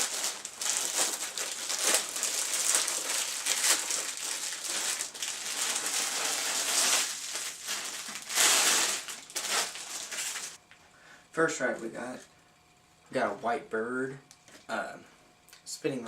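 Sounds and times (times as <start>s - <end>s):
packaging crinkling: 0.0s - 10.6s.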